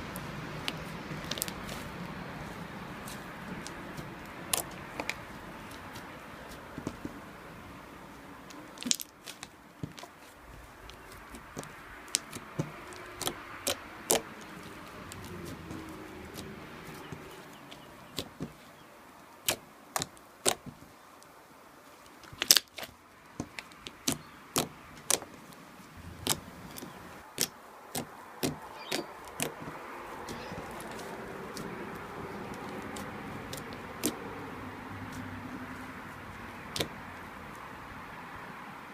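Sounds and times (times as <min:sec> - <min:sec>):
slime clicking and popping: 0:11.6 - 0:14.3, 0:33.5 - 0:34.1.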